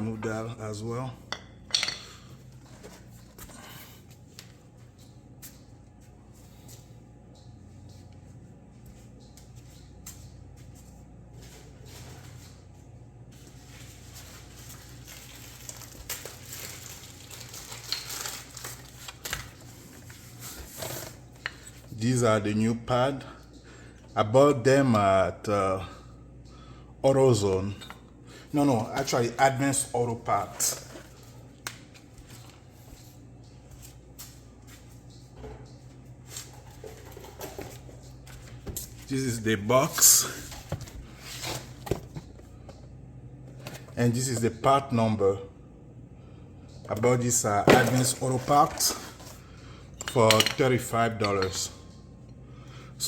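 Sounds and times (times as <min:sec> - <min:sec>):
low steady hum: 0:00.0 - 0:53.0
packaging rustling and crinkling: 0:13.4 - 0:20.0.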